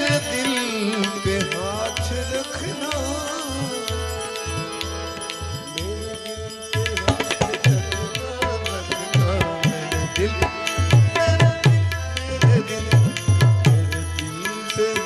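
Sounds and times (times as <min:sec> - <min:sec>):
held melodic notes: 0:00.0 - 0:15.0
tabla playing brisk pattern: 0:00.0 - 0:15.0.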